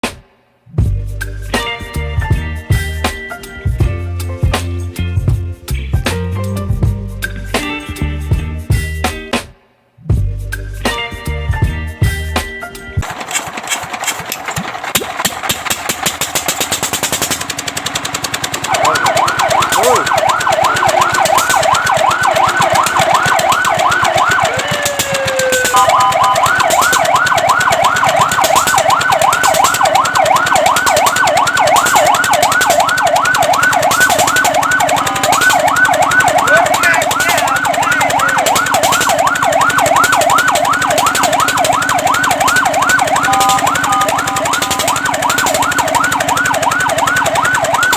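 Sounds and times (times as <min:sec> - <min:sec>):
engine clatter: 0:13.0 - 0:47.9
fire truck siren yelp: 0:17.1 - 0:47.9.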